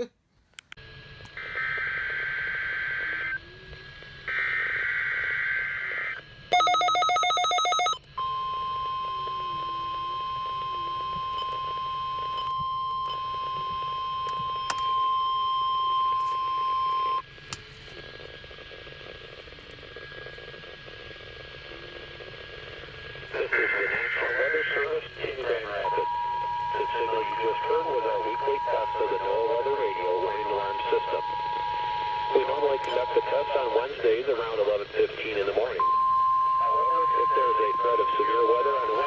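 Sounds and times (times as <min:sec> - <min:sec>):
steady warning alarm tone: 0:04.3 - 0:17.2, 0:23.4 - 0:34.9, 0:35.6 - 0:39.0
radio hiss: 0:17.6 - 0:35.9, 0:36.6 - 0:39.0
loud harsh beep: 0:35.8 - 0:39.0.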